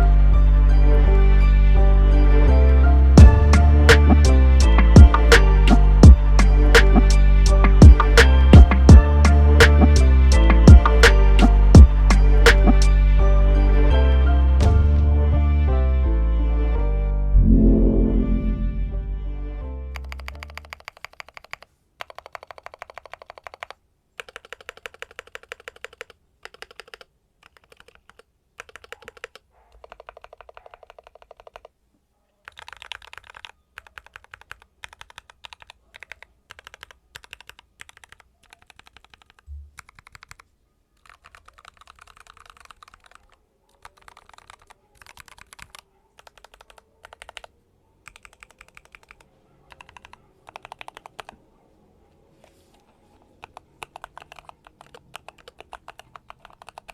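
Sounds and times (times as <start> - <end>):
fast typing on mechanical keyboard: 20.0 - 31.8, 32.4 - 51.4, 53.2 - 56.9.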